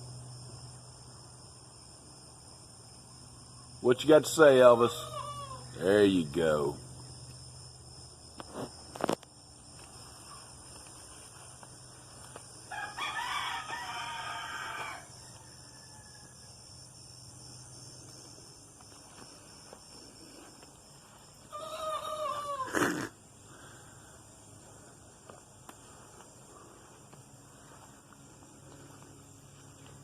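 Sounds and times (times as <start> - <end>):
high insect buzz: 0.0 - 30.0
rooster crowing: 4.8 - 5.7, 12.6 - 16.6, 21.4 - 23.0.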